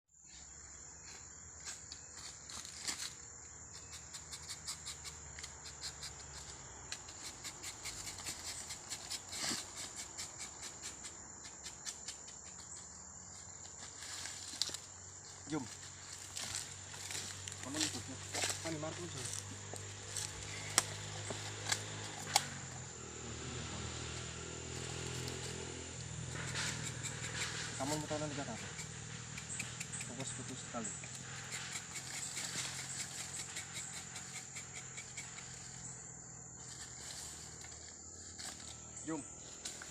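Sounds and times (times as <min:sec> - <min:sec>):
insects trilling: 0:00.2 - 0:39.9
short clicks and scrapes: 0:26.3 - 0:27.9
sharp clicks: 0:28.6 - 0:35.6.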